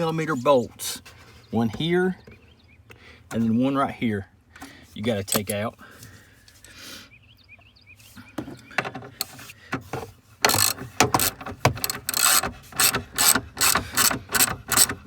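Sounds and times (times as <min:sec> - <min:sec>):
socket ratchet clicking: 0:10.4 - 0:15.0.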